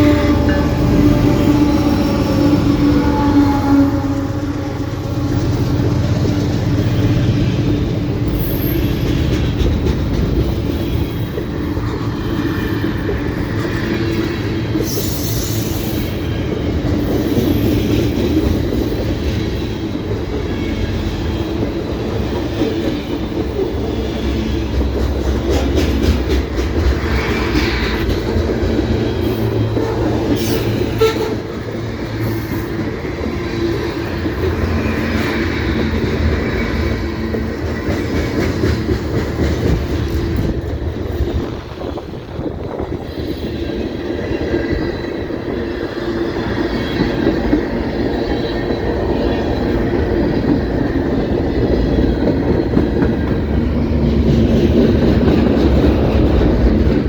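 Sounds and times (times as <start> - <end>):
train wheels rumbling on rails: 0.0 - 57.0
high wheel squeals: 6.8 - 9.5.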